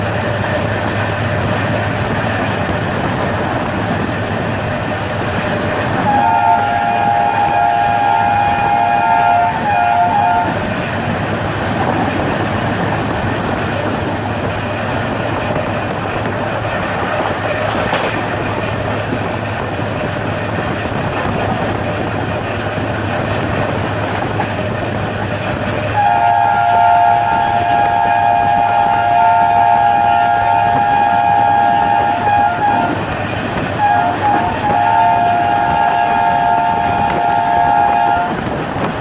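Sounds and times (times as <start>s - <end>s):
train running on rails: 0.0s - 39.0s
locomotive horn: 5.9s - 10.7s, 25.9s - 38.6s.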